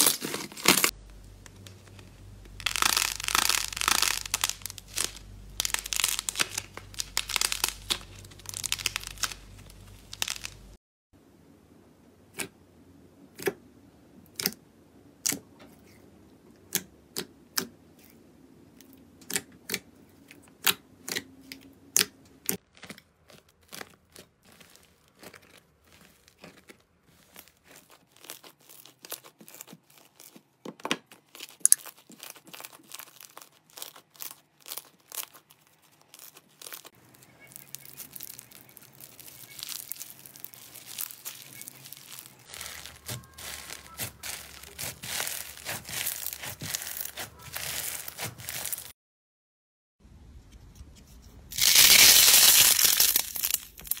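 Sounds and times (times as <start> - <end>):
slime crackling: 0.0 - 10.8, 22.5 - 48.9, 51.5 - 54.0.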